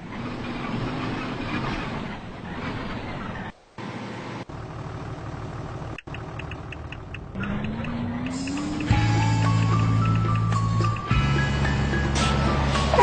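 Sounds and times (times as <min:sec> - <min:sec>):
street traffic: 0:00.0 - 0:13.0
vehicle engine running: 0:03.8 - 0:13.0.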